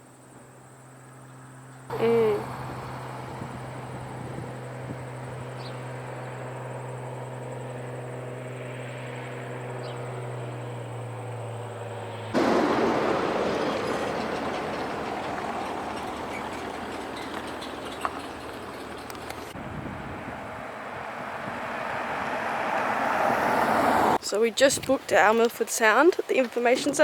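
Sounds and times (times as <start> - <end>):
low engine hum: 0.0 - 27.0
even rushing noise: 19.5 - 24.2.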